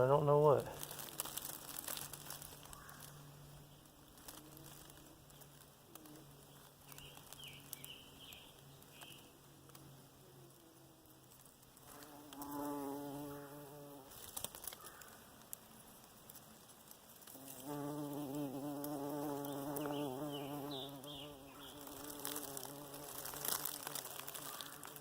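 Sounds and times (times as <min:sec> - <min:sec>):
large insect buzzing: 0:11.9 - 0:15.0, 0:17.3 - 0:25.0.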